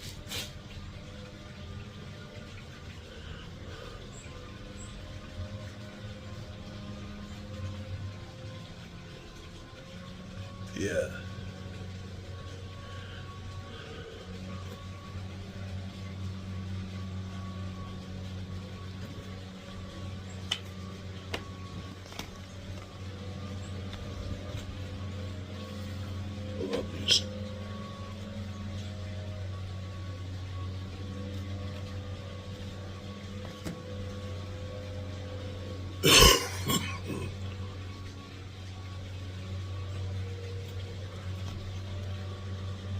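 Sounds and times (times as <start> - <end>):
low mechanical hum: 0.0 - 42.9
person coughing: 36.0 - 37.3.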